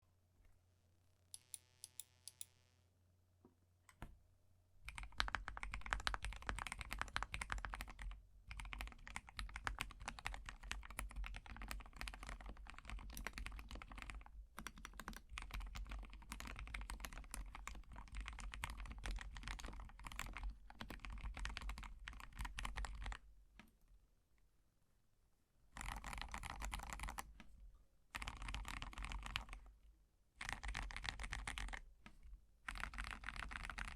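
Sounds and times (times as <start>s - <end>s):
mechanical keyboard typing: 4.9s - 23.2s, 25.8s - 27.3s, 28.1s - 29.6s, 30.4s - 31.8s, 32.7s - 33.9s.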